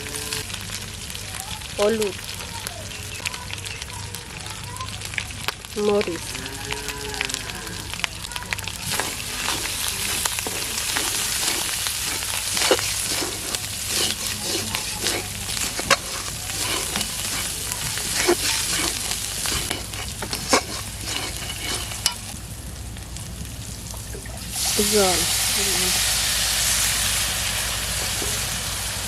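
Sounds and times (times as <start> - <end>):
onion sizzling in hot oil: 0.0 - 29.0
spatula scraping pan: 8.7 - 22.4, 28.0 - 28.5.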